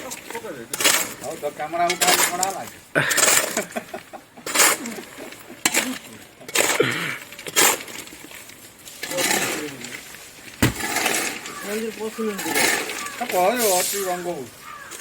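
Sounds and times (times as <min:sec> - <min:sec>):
voices: 0:09.0 - 0:15.0
digging tool striking stony soil: 0:10.5 - 0:13.5.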